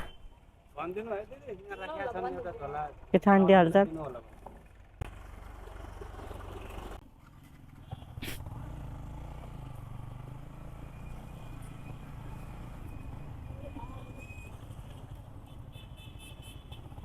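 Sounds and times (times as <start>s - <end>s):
motorcycle engine running: 3.8s - 10.8s.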